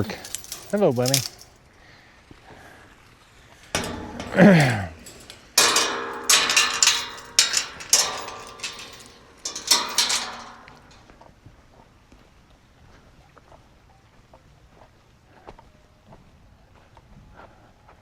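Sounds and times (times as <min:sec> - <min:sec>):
metal clanking and rattling: 0:00.0 - 0:01.5, 0:03.7 - 0:11.0.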